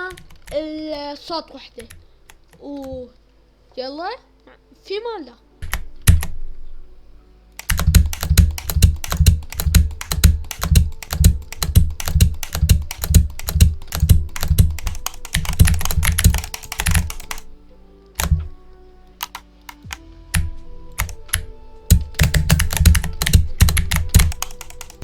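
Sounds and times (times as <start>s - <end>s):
mechanical keyboard typing: 0.0s - 1.0s, 5.6s - 6.4s, 7.6s - 17.6s, 18.2s - 18.6s, 19.2s - 25.0s
faint music: 0.0s - 25.0s.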